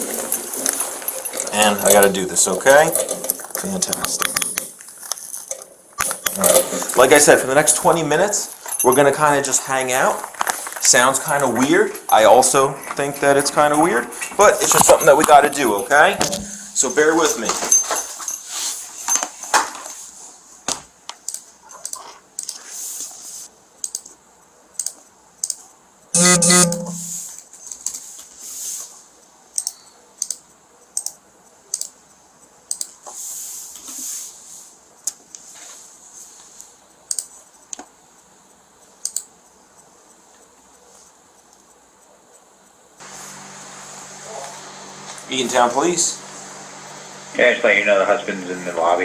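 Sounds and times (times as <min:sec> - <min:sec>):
faint high-pitched whine: 0:00.0 - 0:18.2, 0:25.7 - 0:27.9
short buzzing tone: 0:26.2 - 0:27.3.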